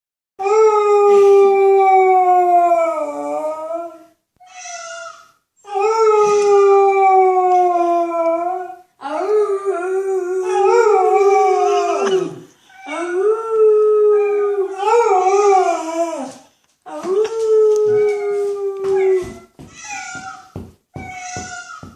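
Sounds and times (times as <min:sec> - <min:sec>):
dog howling: 0:05.8 - 0:16.4, 0:17.0 - 0:19.4.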